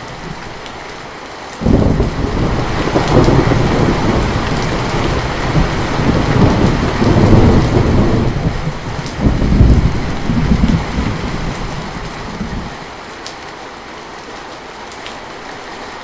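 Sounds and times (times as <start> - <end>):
heavy rain falling: 0.0 - 16.0
deep rumble of thunder: 1.6 - 12.8.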